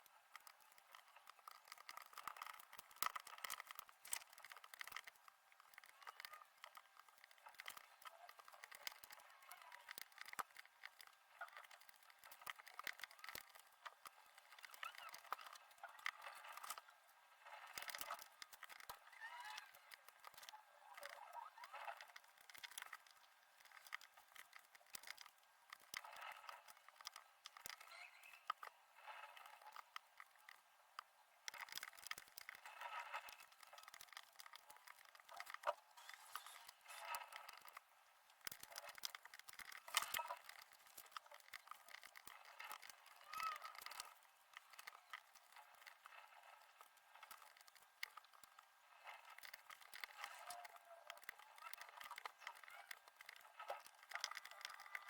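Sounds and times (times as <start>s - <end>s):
puzzle pieces clicking: 31.5s - 55.0s.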